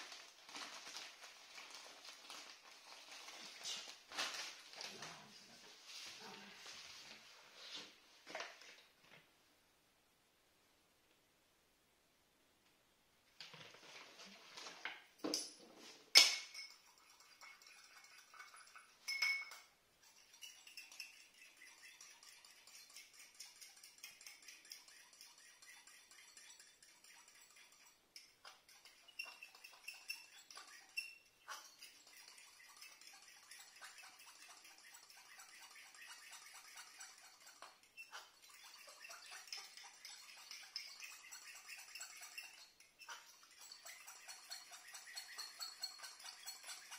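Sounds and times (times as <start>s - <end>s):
crinkly packaging rustling: 0.0s - 7.2s.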